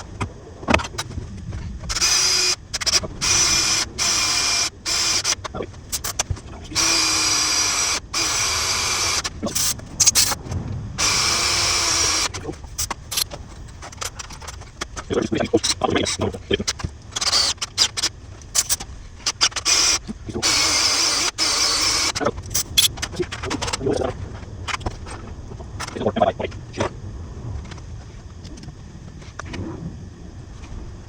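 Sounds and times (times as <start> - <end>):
power drill whining: 1.9 - 10.4, 11.0 - 13.2, 16.8 - 22.8.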